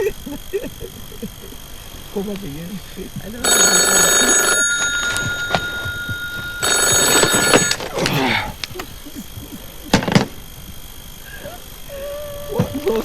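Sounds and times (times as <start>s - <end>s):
telephone ringing: 3.2s - 11.2s.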